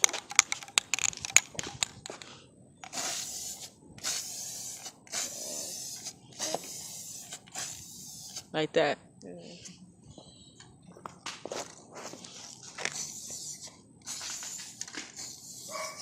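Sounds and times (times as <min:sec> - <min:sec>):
spray can hissing: 0:02.9 - 0:08.5, 0:12.8 - 0:16.0.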